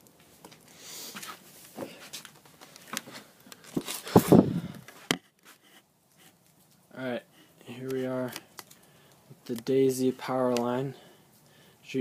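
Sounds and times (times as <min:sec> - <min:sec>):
handling clicks and rustling: 0:07.8 - 0:10.8.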